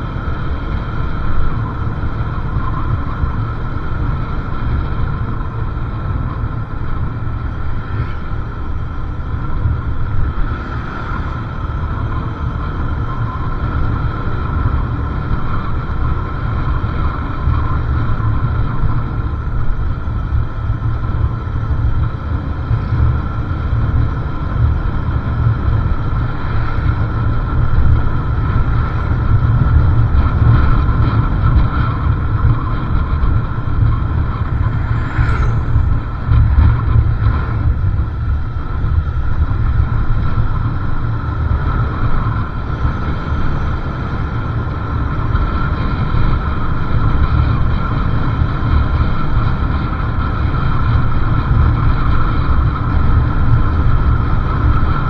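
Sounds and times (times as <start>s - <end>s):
road noise: 0.0s - 55.0s
wind buffeting microphone: 0.0s - 55.0s
short high squeak: 34.2s - 37.2s.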